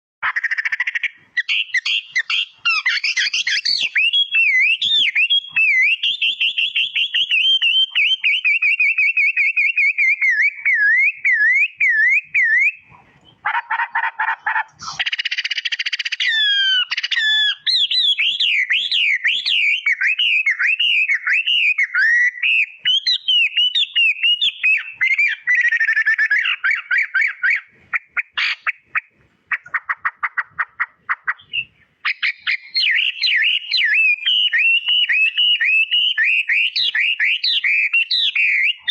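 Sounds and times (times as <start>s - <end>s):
harsh rattling bird chatter: 0.2s - 6.6s
songbird warbling: 0.2s - 38.9s.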